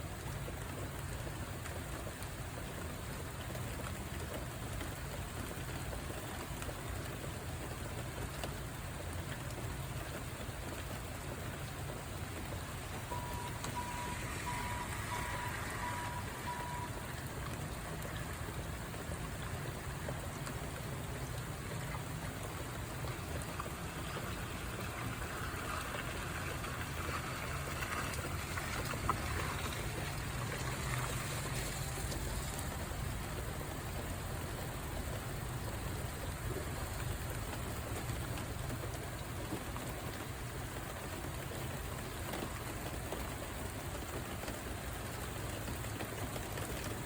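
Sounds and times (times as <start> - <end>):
steady rain falling: 0.0 - 47.0
short high beeps: 13.1 - 17.1.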